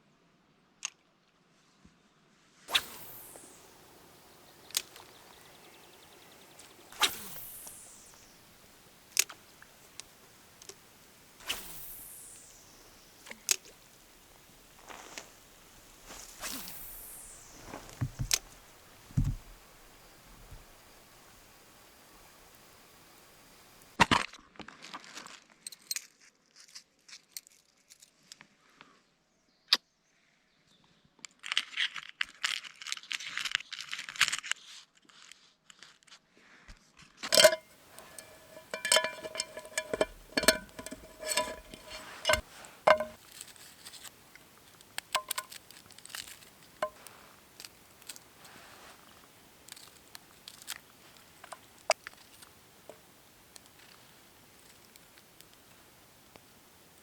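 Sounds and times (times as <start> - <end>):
rustling and crinkling: 13.2 - 20.8, 24.6 - 28.6, 31.4 - 56.4
metal gear clinking: 37.3 - 43.4.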